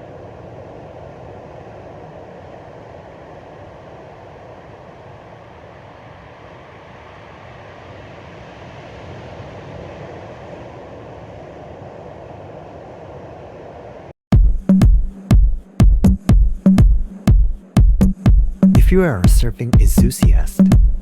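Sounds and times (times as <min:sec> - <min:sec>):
waves at the shore: 0:00.0 - 0:14.1
wind: 0:00.0 - 0:14.1
electronic music with heavy beat: 0:14.4 - 0:21.0.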